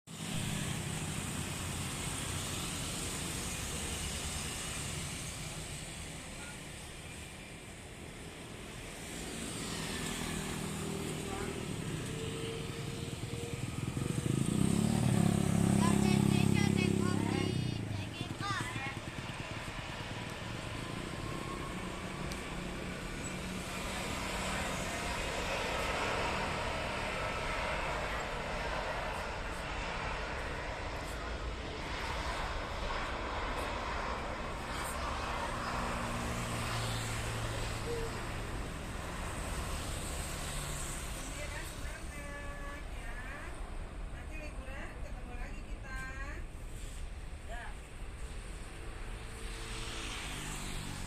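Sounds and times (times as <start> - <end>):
jet engines roaring at takeoff: 0.1 - 51.0.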